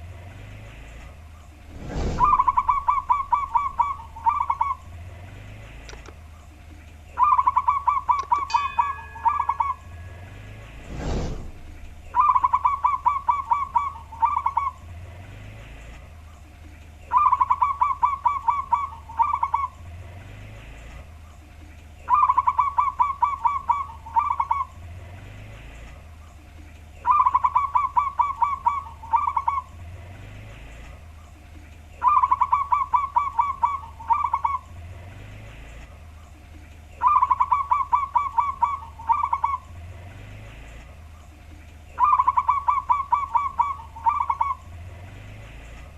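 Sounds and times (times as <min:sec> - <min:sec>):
low steady hum: 0:00.0 - 0:45.9
dove cooing: 0:02.2 - 0:05.2, 0:07.1 - 0:10.5, 0:11.4 - 0:14.9, 0:17.0 - 0:19.8, 0:22.0 - 0:24.8, 0:27.0 - 0:29.8, 0:32.0 - 0:34.8, 0:37.0 - 0:39.8, 0:41.9 - 0:44.8.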